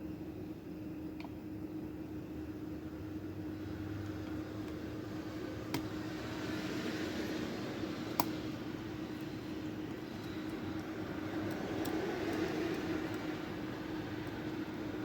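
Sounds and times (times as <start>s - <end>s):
steady background hum: 0.0s - 15.0s.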